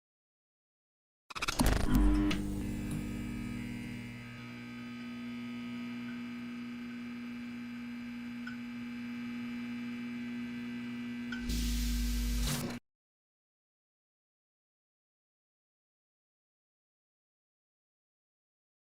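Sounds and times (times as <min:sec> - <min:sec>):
water pipes humming: 0:02.2 - 0:12.4.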